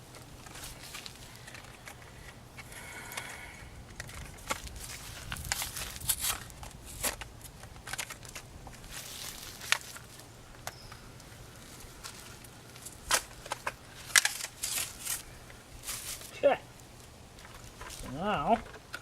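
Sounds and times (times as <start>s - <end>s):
packaging tearing and crackling: 3.9s - 10.2s, 11.7s - 16.3s.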